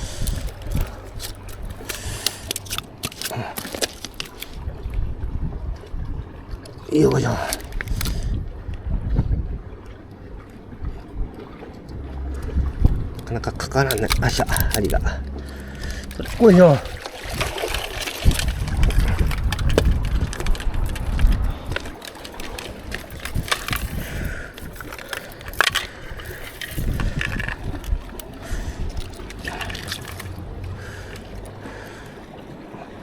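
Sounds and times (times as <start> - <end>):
handling clicks and knocks: 0.0 - 4.6, 11.9 - 31.6
wind buffeting microphone: 0.0 - 33.0.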